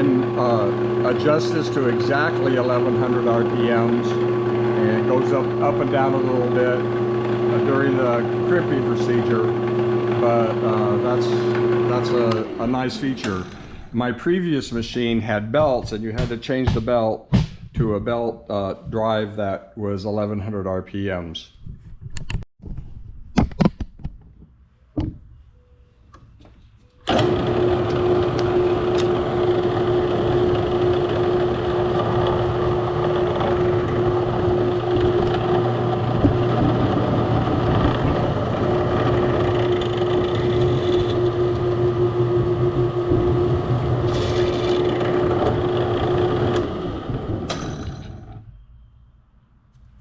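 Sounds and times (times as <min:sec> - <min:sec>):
drill press motor humming: 0:00.0 - 0:14.0, 0:27.0 - 0:48.6.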